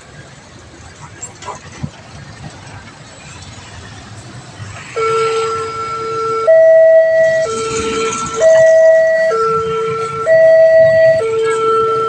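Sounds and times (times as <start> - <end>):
level crossing two-tone alarm: 5.0 - 12.0.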